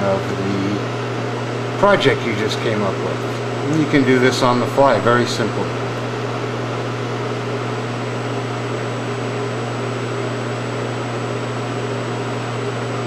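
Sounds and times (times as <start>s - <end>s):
fan whoosh: 0.0s - 13.0s
low electrical hum: 0.0s - 13.0s.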